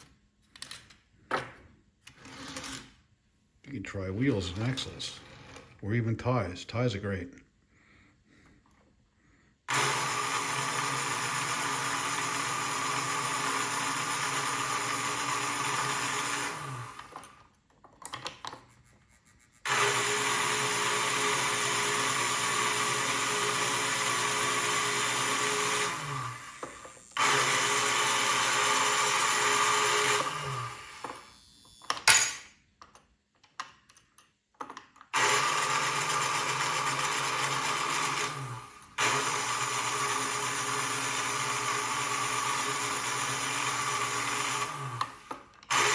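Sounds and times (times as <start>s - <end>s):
toy crane electric motor: 9.7s - 17.4s, 18.7s - 32.1s, 35.1s - 45.9s.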